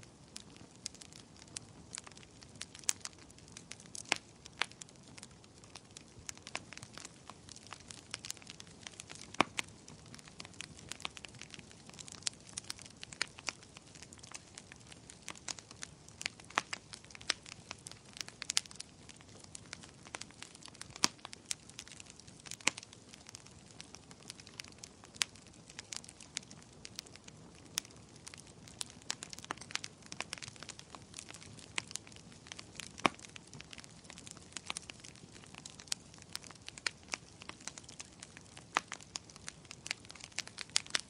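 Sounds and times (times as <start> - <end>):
wood fire crackling: 0.0 - 41.0.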